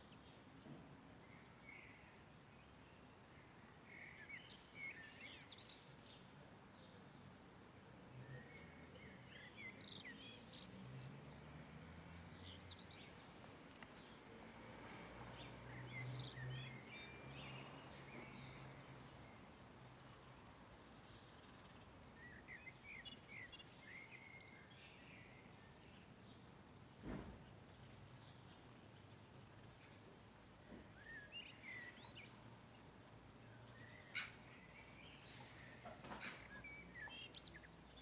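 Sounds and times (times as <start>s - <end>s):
small birds twittering: 15.4s - 26.5s, 27.5s - 38.0s.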